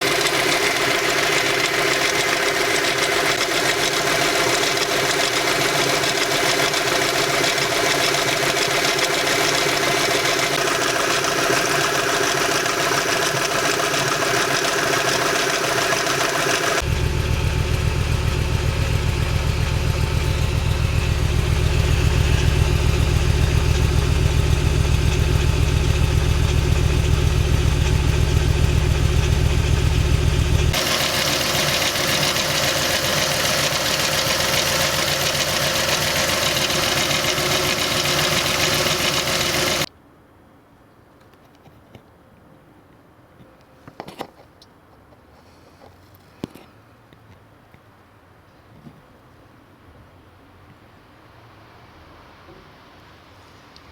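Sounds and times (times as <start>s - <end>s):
car engine idling: 0.0s - 39.9s
mechanical engine noise: 0.0s - 39.9s
deep low drone: 16.8s - 30.8s.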